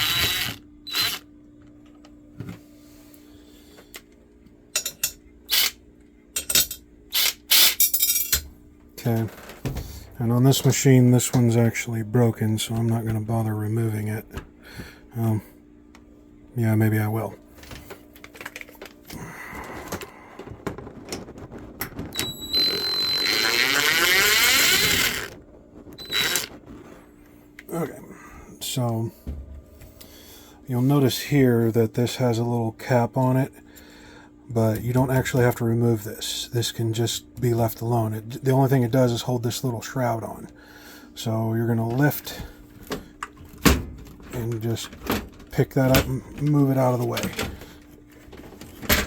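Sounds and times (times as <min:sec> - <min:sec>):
cordless power driver whining: 0:00.0 - 0:01.3, 0:22.1 - 0:26.7
steady low hum: 0:00.0 - 0:49.0
metallic clinks of tools and parts: 0:07.6 - 0:08.4
clicks and handling of parts: 0:17.6 - 0:19.2, 0:19.8 - 0:26.8.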